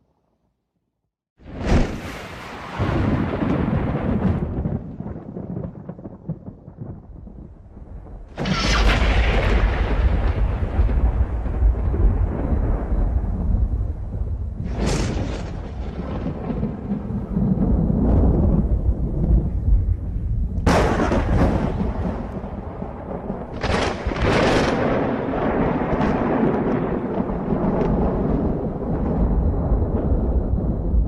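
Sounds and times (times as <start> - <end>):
low thunder rumble: 1.4 - 31.0
thunder cracks: 1.4 - 31.0.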